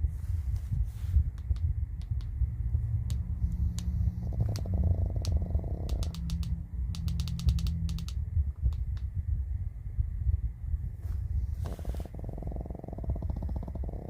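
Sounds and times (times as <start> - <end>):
sharp clicks: 1.4 - 2.4, 3.0 - 9.1
pet snoring: 3.9 - 5.9, 11.6 - 14.0.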